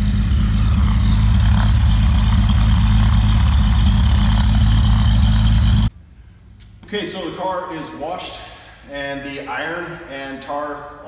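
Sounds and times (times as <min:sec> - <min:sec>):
car engine idling: 0:00.0 - 0:05.9.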